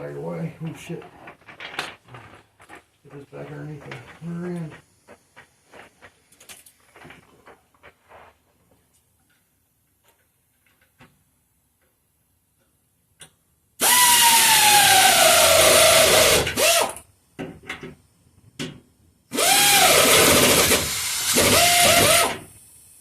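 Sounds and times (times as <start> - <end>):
pneumatic air ratchet: 13.8 - 17.1, 19.3 - 23.0.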